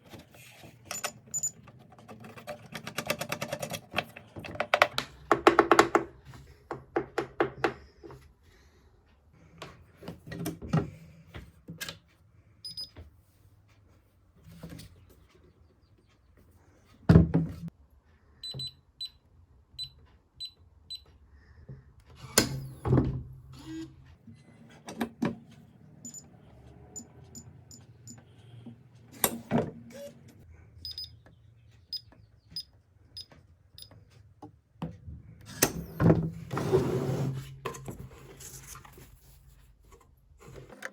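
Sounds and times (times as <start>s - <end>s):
short electronic keypad beeps: 30.8s - 31.1s.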